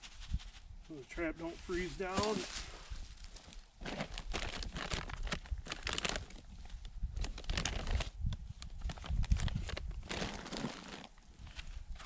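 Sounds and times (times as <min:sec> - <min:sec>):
hands crunching dirt: 0:00.0 - 0:05.9.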